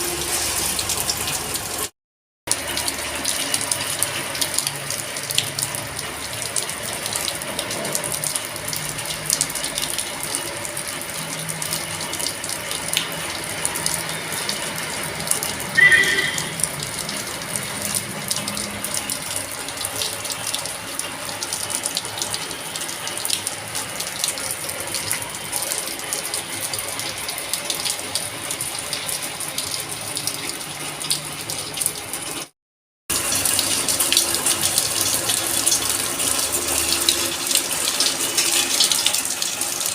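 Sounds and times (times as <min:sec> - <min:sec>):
rain pattering on hard surfaces: 0:00.0 - 0:01.9, 0:02.5 - 0:15.8, 0:16.5 - 0:32.5, 0:33.1 - 0:39.9
brief high-pitched sound: 0:15.7 - 0:16.8.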